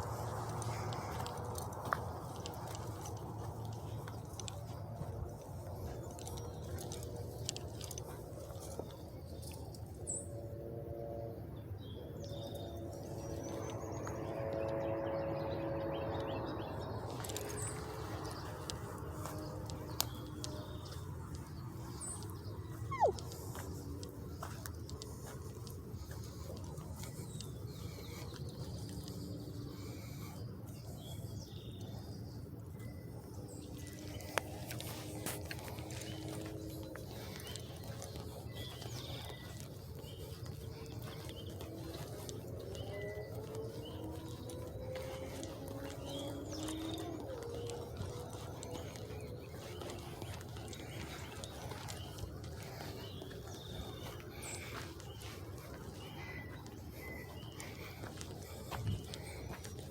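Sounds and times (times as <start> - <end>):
droning hum: 0.0 - 59.9
steady low rumble: 0.0 - 59.9
faint bird chirps: 22.7 - 24.1.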